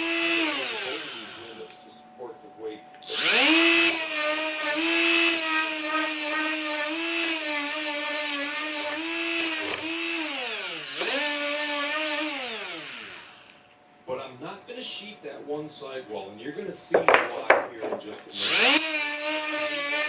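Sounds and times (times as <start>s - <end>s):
power tool motor spinning: 0.0s - 1.8s, 3.0s - 13.6s, 18.3s - 20.0s.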